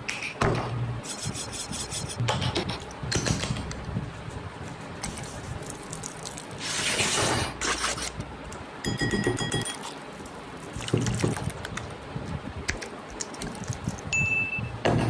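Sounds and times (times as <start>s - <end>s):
food scraping and rubbing: 1.1s - 3.0s, 4.0s - 8.2s.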